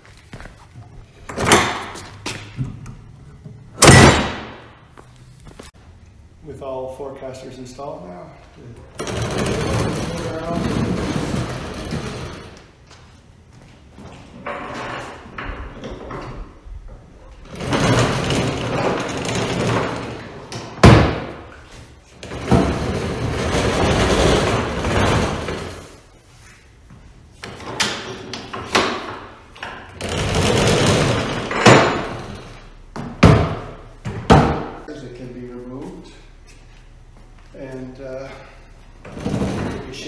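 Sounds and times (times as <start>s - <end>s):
workbench rolling on casters: 8.9s - 12.7s, 14.1s - 21.4s, 22.0s - 26.1s, 27.6s - 32.7s, 39.0s - 40.0s.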